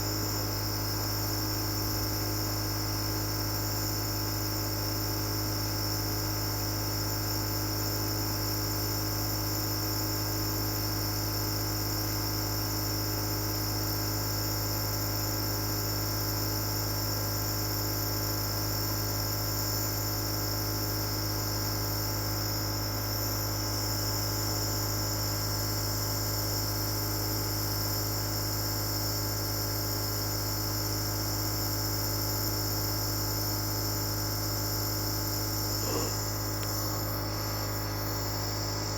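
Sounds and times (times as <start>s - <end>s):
nebulizer motor hum: 32.7s - 38.9s
high even whine: 35.7s - 38.9s.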